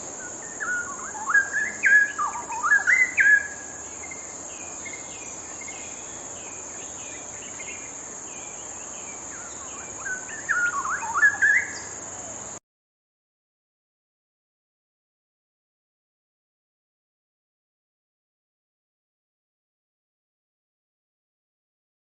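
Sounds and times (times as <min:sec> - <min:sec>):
high-pitched insect drone: 0:00.0 - 0:12.6
bird singing warbled phrases: 0:00.2 - 0:12.4.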